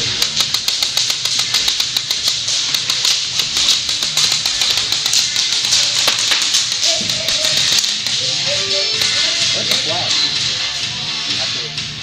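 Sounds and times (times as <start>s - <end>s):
fast ticking beat: 0.0s - 10.7s
guitar music: 4.2s - 10.8s.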